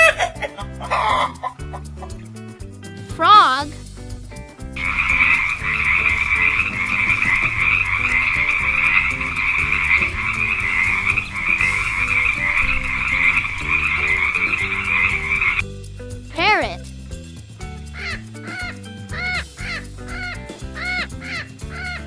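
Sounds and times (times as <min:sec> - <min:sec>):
frogs croaking in chorus: 0:04.8 - 0:15.6.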